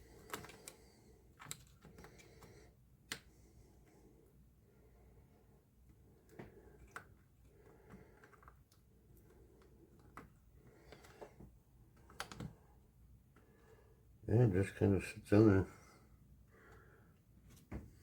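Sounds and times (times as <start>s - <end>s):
plastic parts clicking: 0.2s - 2.3s.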